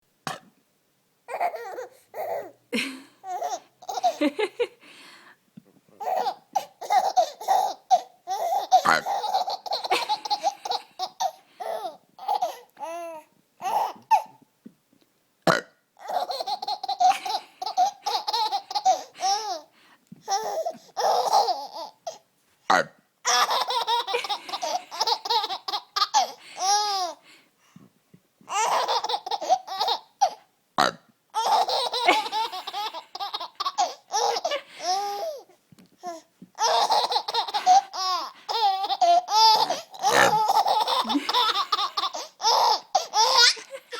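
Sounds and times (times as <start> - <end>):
woman burping: 0.3 - 0.5, 40.1 - 40.5
baby giggling: 1.3 - 4.8, 6.0 - 14.4, 16.0 - 22.2, 23.3 - 27.2, 28.5 - 30.4, 31.4 - 35.5, 36.1 - 43.9.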